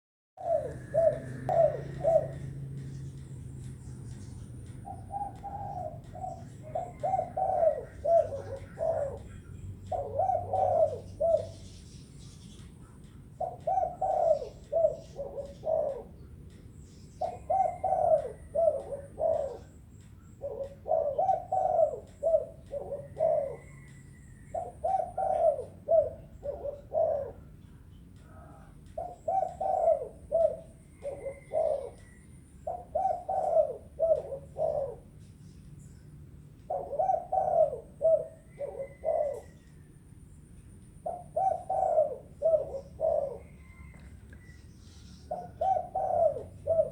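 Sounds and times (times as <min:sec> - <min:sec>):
dove cooing: 0:00.4 - 0:46.9.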